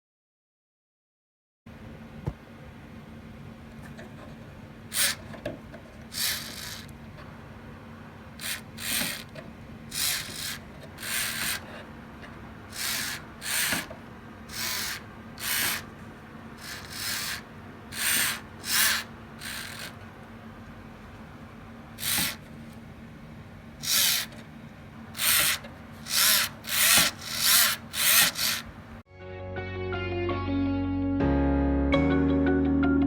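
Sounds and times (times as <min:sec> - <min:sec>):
hand rasping small part: 0:04.9 - 0:05.4, 0:06.1 - 0:06.9, 0:08.4 - 0:11.8, 0:12.7 - 0:15.9, 0:16.6 - 0:20.0, 0:22.0 - 0:22.5, 0:23.8 - 0:24.4, 0:25.2 - 0:28.7.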